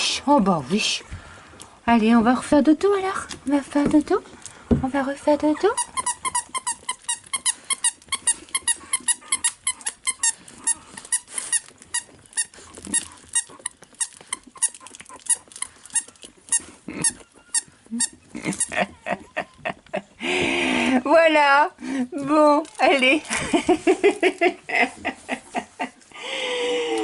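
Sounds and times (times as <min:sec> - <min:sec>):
puppies squeaking and peeping: 0:05.3 - 0:20.2.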